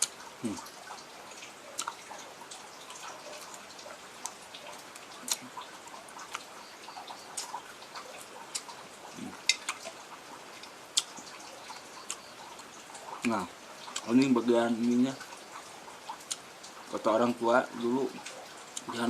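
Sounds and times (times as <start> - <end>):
chewing with mouth clicks: 0.0 - 14.3, 15.2 - 16.5.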